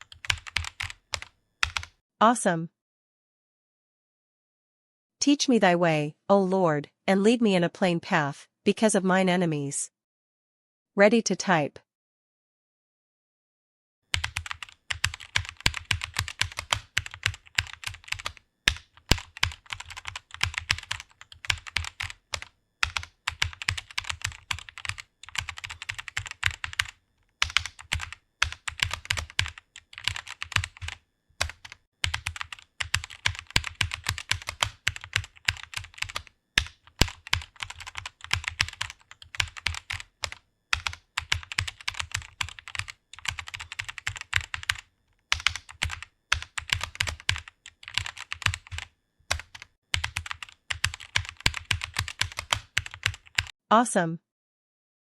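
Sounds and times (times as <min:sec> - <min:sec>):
fast keyboard typing: 0:00.0 - 0:01.9, 0:14.1 - 0:53.6.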